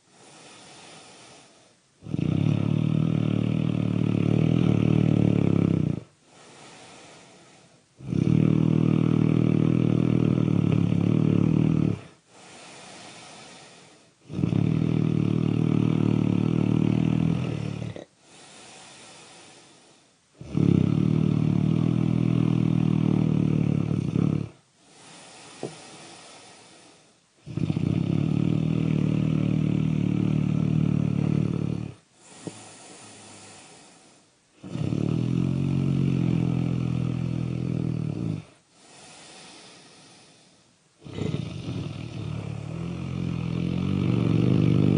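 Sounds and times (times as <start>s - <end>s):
soft breathing: 0.0s - 1.9s, 6.0s - 8.0s, 11.9s - 14.3s, 15.4s - 20.4s, 21.4s - 27.8s, 28.8s - 34.9s, 36.2s - 43.3s
deep snoring: 0.0s - 44.9s.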